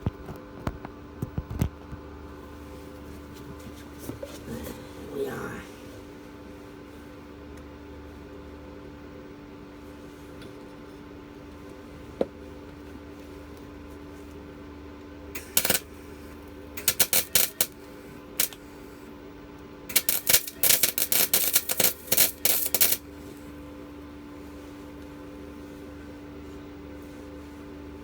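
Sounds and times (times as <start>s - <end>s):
steady hum: 0.0s - 28.0s
welding arc crackling: 15.4s - 16.0s, 16.8s - 17.8s, 19.9s - 23.0s.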